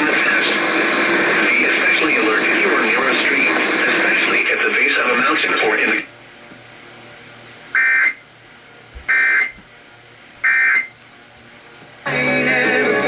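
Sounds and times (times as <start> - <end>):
buzzing data tone bursts: 9.1 - 9.6, 10.4 - 10.9.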